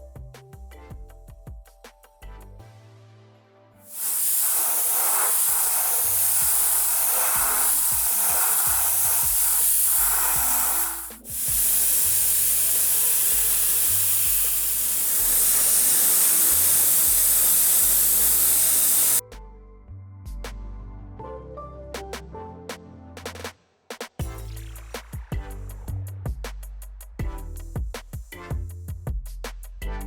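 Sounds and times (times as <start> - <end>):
background music: 0.0 - 23.6, 24.2 - 26.5, 27.2 - 30.0
spray paint hissing: 3.9 - 19.2.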